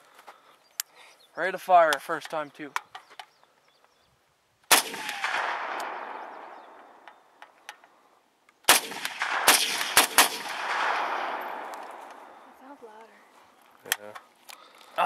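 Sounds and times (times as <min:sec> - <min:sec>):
rifle shots with echo: 0:04.7 - 0:07.0, 0:08.7 - 0:12.5.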